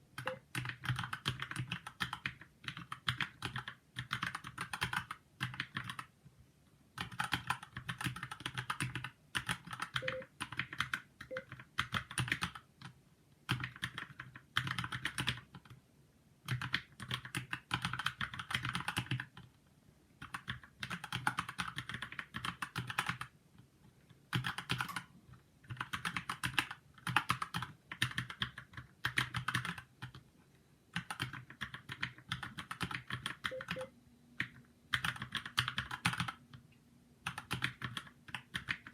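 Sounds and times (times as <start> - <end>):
fast keyboard typing: 0.2 - 6.1, 7.0 - 15.8, 16.5 - 19.5, 20.2 - 23.3, 24.3 - 30.2, 30.9 - 36.4, 37.2 - 38.9.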